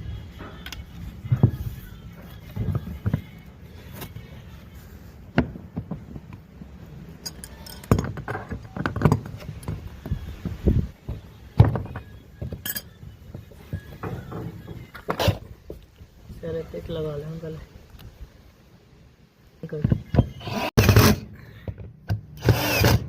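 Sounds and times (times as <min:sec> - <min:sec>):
tools knocking and clinking: 0:07.2 - 0:09.8, 0:11.6 - 0:13.0.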